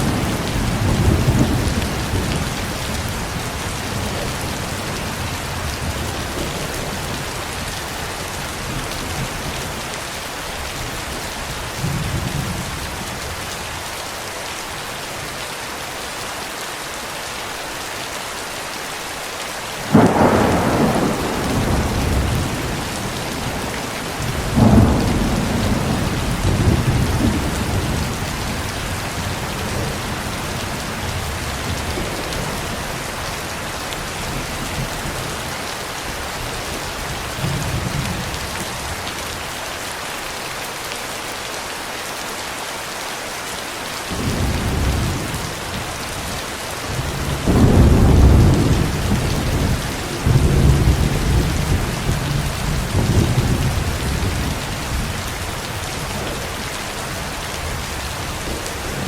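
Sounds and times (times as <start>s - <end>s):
thunder rumbling: 0.0s - 7.4s, 19.8s - 33.2s, 46.9s - 59.0s
steady rain falling: 0.0s - 59.0s
loud thunderclap: 19.9s - 28.6s, 46.9s - 55.2s.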